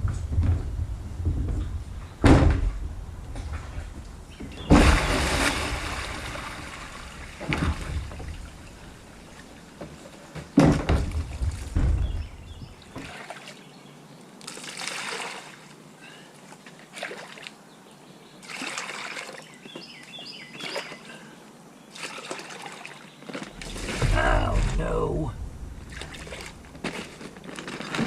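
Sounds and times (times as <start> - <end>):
water splashing from bucket: 4.7 - 8.6, 14.4 - 15.6, 18.4 - 19.4, 21.9 - 25.0, 25.8 - 28.0.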